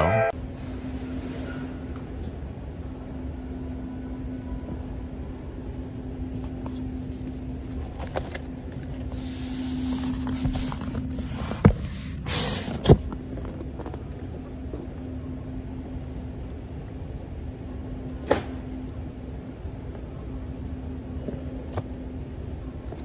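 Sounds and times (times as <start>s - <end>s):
mechanical drone with low hum: 0.0s - 23.0s.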